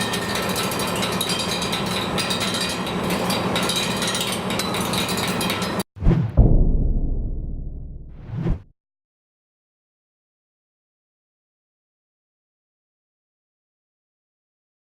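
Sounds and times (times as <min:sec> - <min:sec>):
noisemakers clattering and banging: 0:00.0 - 0:05.8
heavy low thump: 0:06.0 - 0:08.7.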